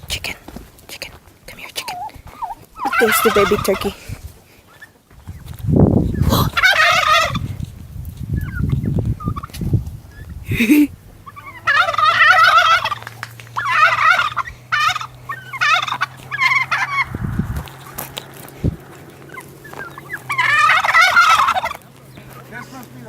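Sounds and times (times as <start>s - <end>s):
turkeys gobbling: 1.6s - 4.0s, 4.6s - 5.4s, 6.2s - 7.6s, 8.4s - 23.0s
steady low hum: 7.4s - 22.8s
low rumble: 12.7s - 22.4s.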